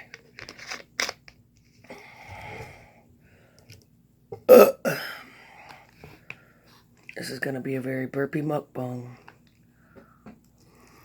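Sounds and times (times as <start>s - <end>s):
person burping loudly: 4.4s - 5.2s.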